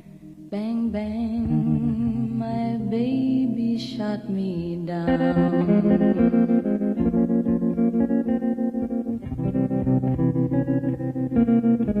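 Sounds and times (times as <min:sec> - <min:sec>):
electric guitar tremolo chords: 0:00.0 - 0:12.0
bass line: 0:00.7 - 0:03.5, 0:05.0 - 0:08.5.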